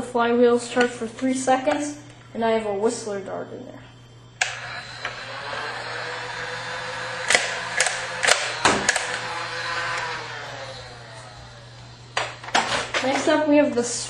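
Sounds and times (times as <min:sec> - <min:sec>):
toy blaster flywheels whirring: 0:04.4 - 0:13.1
blaster firing clicks and knocks: 0:07.2 - 0:09.2.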